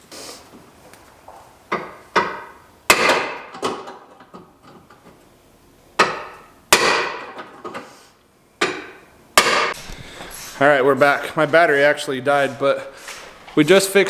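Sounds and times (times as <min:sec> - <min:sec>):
hammer striking metal: 0:06.0 - 0:07.3.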